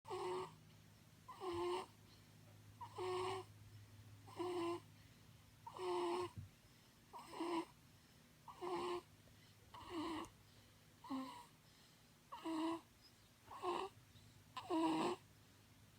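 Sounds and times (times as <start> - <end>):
snoring: 0.1 - 0.6, 1.3 - 2.0, 2.8 - 3.5, 4.3 - 4.9, 5.7 - 6.4, 7.1 - 7.8, 8.5 - 9.1, 9.7 - 10.3, 11.0 - 11.5, 12.3 - 12.9, 13.5 - 14.0, 14.6 - 15.2.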